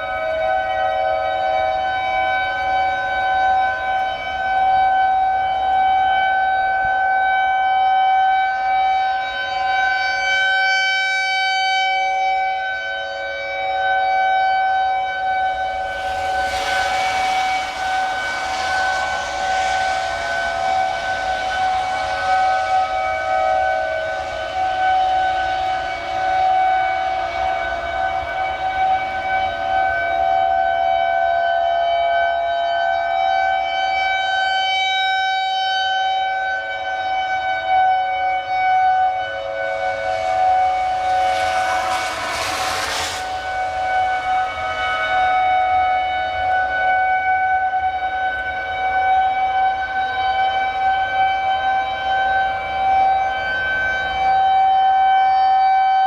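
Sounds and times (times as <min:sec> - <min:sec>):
tornado warning siren wailing: 0:00.0 - 0:31.2, 0:36.4 - 0:55.5
brief rush of noise: 0:14.2 - 0:30.5, 0:38.0 - 0:54.4.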